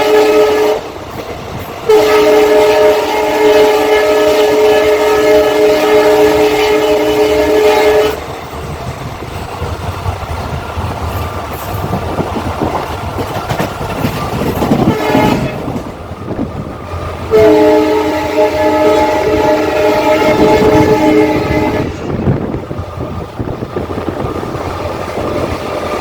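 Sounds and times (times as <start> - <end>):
locomotive horn chord: 0.0 - 0.9, 1.9 - 8.3, 14.8 - 15.8, 17.2 - 22.3
train rumbling on track: 0.0 - 26.0.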